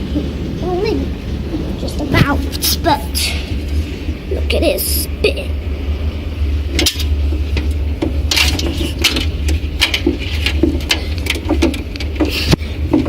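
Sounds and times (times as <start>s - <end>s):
washing machine humming: 0.0s - 13.0s.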